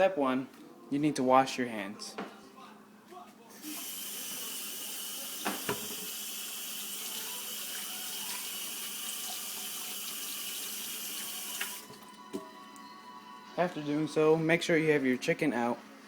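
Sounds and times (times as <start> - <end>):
tap water running into sink: 3.6 - 12.5.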